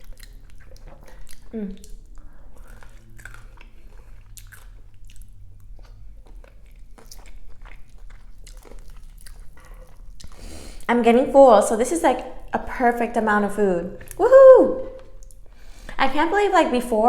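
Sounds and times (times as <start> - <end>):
person chewing food: 0.0 - 10.9, 14.8 - 16.0.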